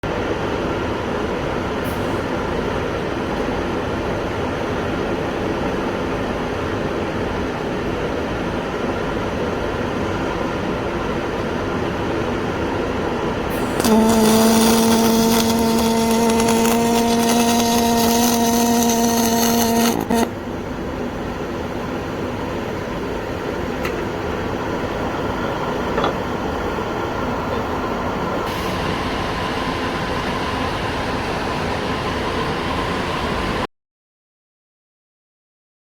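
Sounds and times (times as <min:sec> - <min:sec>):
steady background hum: 0:00.0 - 0:33.7
welding arc crackling: 0:13.5 - 0:20.3.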